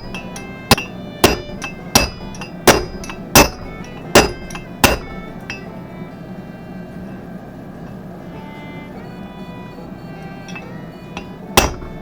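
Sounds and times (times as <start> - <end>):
hammer striking metal: 0.0 - 5.8, 10.4 - 12.0.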